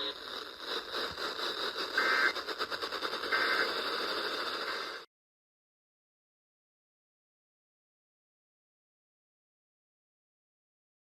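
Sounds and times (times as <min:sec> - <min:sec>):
digital data bursts: 0:00.0 - 0:05.0
radio hiss and static: 0:00.0 - 0:05.1.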